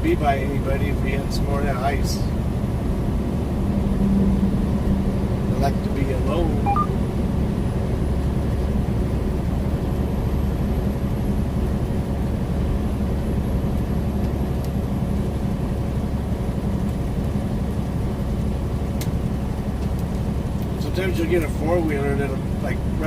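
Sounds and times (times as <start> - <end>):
road noise: 0.0 - 12.8
diesel truck engine drone: 0.0 - 23.0.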